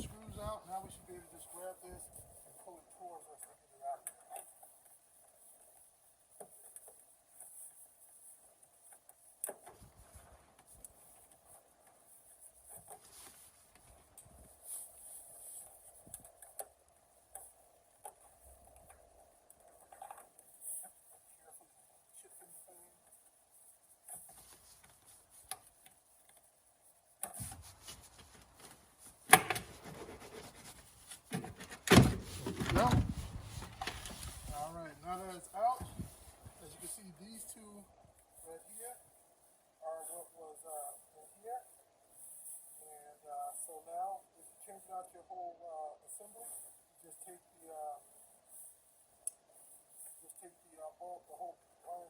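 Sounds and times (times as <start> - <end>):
plastic rubbing and scraping: 27.3 - 36.6.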